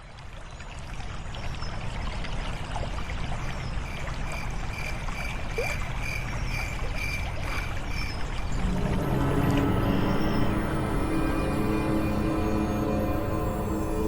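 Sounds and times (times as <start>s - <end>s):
stream water running: 0.0s - 14.0s
pulsing high tone: 8.4s - 14.0s.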